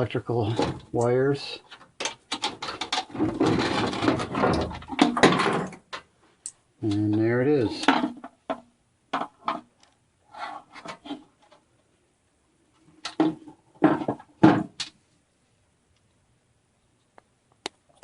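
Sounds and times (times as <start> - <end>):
knocks and clunks of handled parts: 0.4 - 6.1, 6.9 - 10.0, 12.8 - 15.0.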